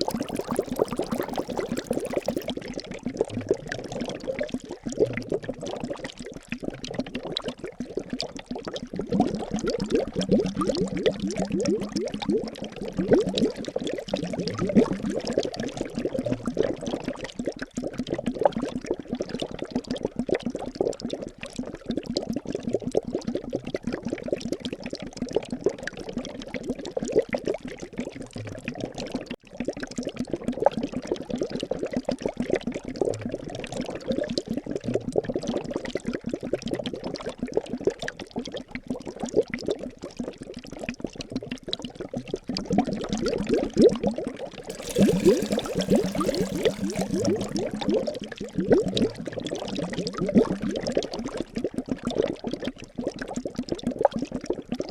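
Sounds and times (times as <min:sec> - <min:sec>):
liquid bubbling: 0:00.0 - 0:02.7, 0:44.7 - 0:48.6.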